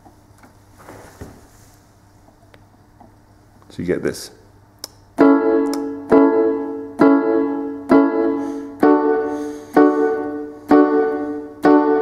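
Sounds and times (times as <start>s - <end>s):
piano chords: 5.2s - 12.0s.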